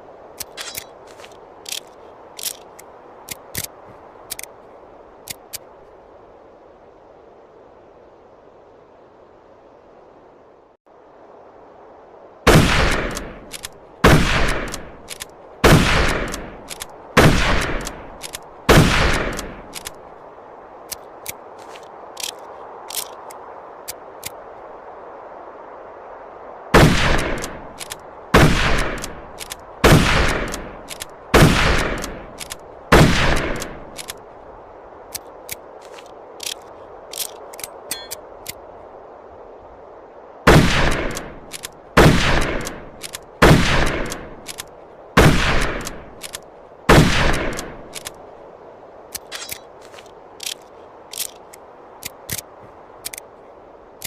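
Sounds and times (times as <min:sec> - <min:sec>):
rifle shots: 0:12.5 - 0:13.4, 0:14.0 - 0:14.9, 0:15.6 - 0:16.5, 0:17.2 - 0:18.0, 0:18.7 - 0:19.6, 0:26.8 - 0:27.6, 0:28.4 - 0:29.2, 0:29.8 - 0:30.7, 0:31.3 - 0:33.8, 0:40.5 - 0:41.3, 0:42.0 - 0:42.8, 0:43.4 - 0:44.6, 0:45.2 - 0:46.0, 0:46.9 - 0:47.8.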